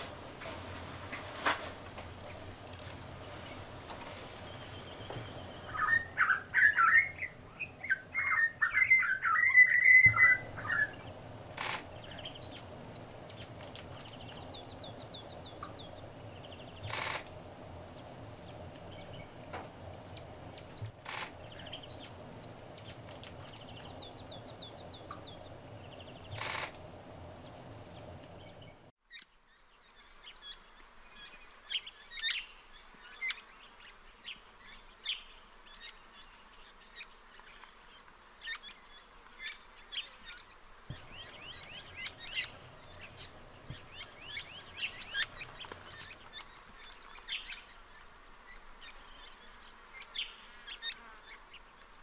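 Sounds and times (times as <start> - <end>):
small birds singing: 2.1 - 28.9, 40.9 - 47.6
sharp clicks: 11.0 - 12.0, 16.7 - 17.4, 20.6 - 22.4, 23.0 - 28.5.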